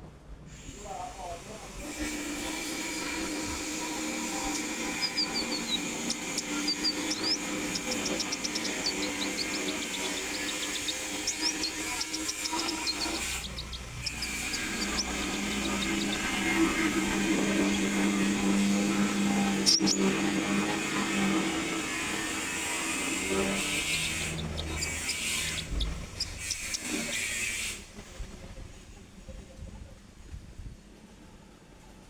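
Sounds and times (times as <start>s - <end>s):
songbird chirping: 2.0s - 27.7s.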